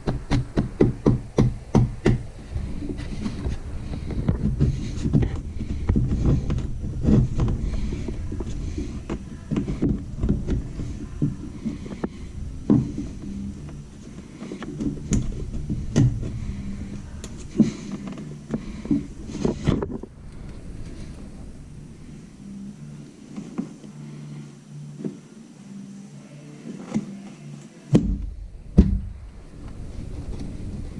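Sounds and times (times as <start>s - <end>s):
sharp clicks and knocks: 0.0s - 16.5s
chisel scraping wood: 0.2s - 20.0s.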